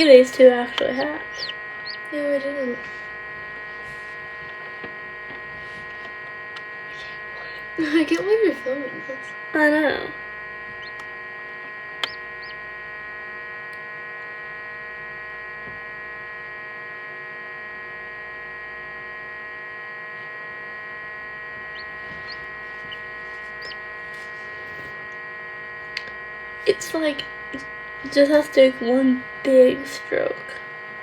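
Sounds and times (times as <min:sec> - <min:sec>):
incubator electrical hum: 0:00.0 - 0:31.0
chicks peeping: 0:00.7 - 0:02.4, 0:10.7 - 0:11.1, 0:11.9 - 0:12.6, 0:21.6 - 0:24.9.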